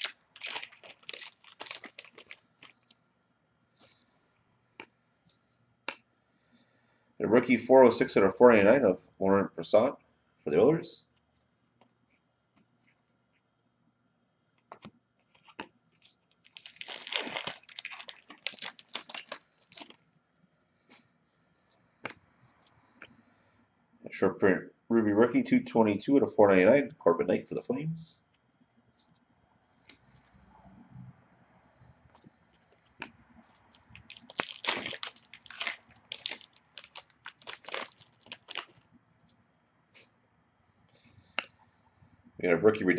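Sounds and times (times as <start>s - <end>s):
wrapper crinkling and rustling: 0.0s - 3.0s, 15.9s - 20.0s, 33.4s - 39.4s.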